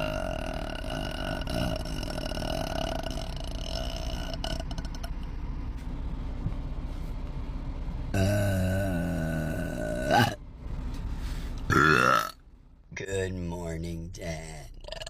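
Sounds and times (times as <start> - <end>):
woman belching: 0.0 - 5.1, 8.2 - 10.4, 11.7 - 12.4, 14.8 - 15.0.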